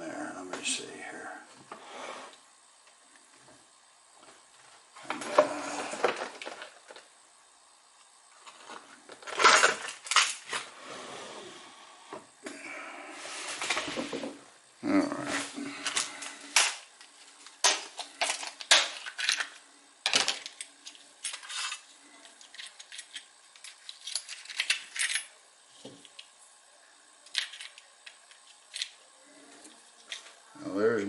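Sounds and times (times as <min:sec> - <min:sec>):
small metal parts clinking: 0:17.6 - 0:25.4, 0:27.3 - 0:29.0.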